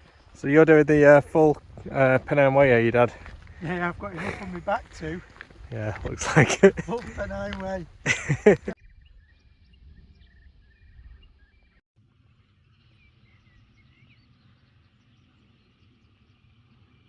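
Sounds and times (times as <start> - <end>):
bird chirps: 7.9 - 11.8, 12.4 - 17.0.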